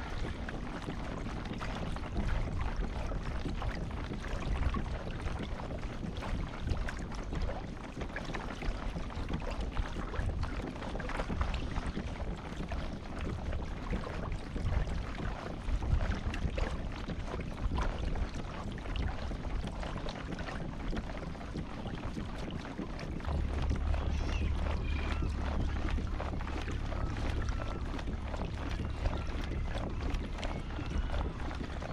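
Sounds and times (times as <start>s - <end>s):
water against boat hull: 0.0s - 31.9s
wind buffeting microphone: 0.0s - 31.9s.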